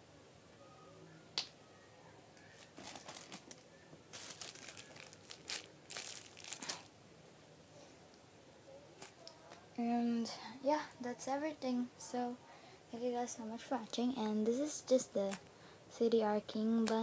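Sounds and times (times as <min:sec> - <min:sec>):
crinkling and rustling: 0:02.4 - 0:06.9.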